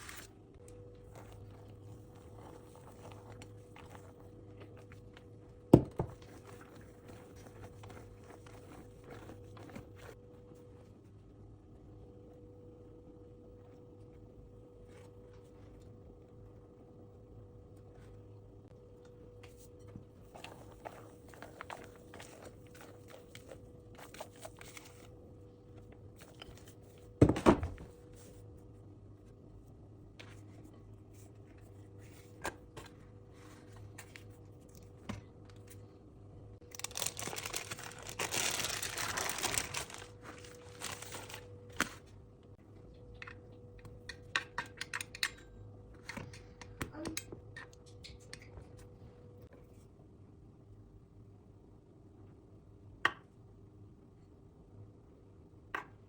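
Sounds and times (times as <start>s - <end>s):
paper rustling and crinkling: 0.0s - 0.4s, 36.6s - 42.2s.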